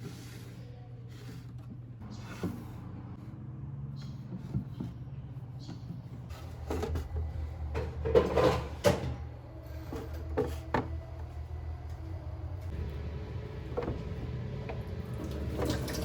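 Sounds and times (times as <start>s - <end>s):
steady low hum: 0.0s - 15.9s
kitchen items knocking and clattering: 6.6s - 9.3s.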